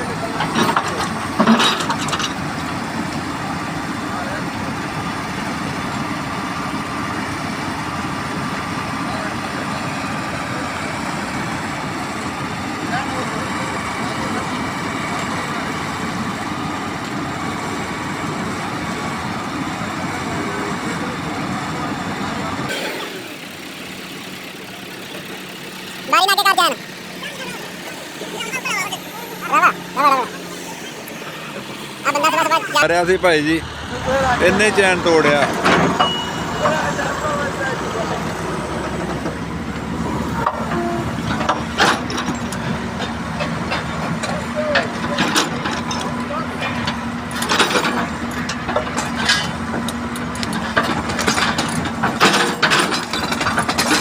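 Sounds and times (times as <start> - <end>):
heavy machinery running: 22.7 - 26.1, 26.8 - 32.0.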